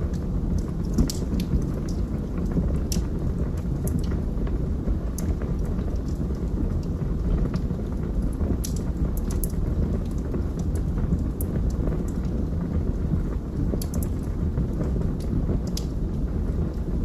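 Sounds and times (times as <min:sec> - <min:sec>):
fire crackles and pops: 0:00.0 - 0:17.0
fire flames rumbling: 0:00.0 - 0:17.0.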